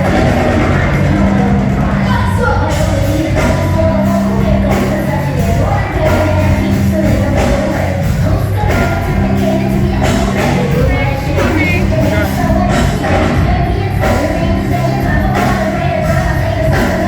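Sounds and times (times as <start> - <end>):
live band playing rnb song: 0.0 - 17.0
person singing: 0.0 - 17.0.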